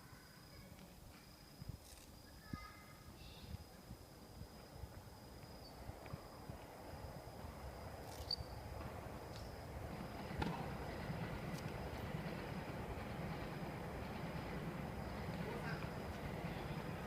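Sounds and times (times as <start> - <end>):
high insect chirr: 0.0 - 17.0.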